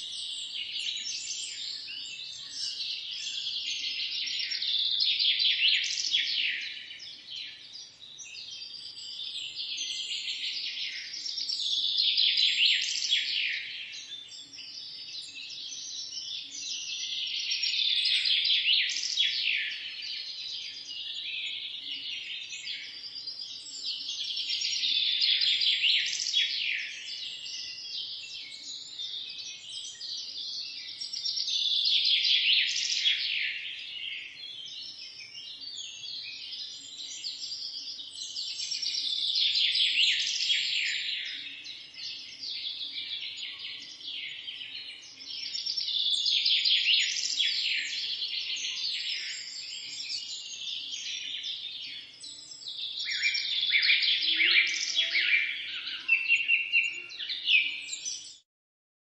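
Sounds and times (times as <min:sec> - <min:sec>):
chorus of birds chirping: 0:00.0 - 0:58.4.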